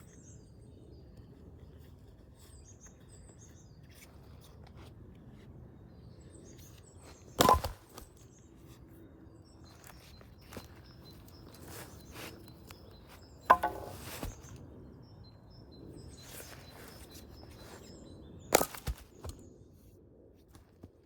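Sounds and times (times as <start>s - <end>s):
birds chirping faintly: 0.0s - 19.8s
axe splitting firewood: 7.4s - 8.0s, 13.5s - 14.4s, 18.5s - 19.4s
split wood pieces falling: 7.4s - 8.1s, 13.5s - 14.4s, 18.5s - 19.4s.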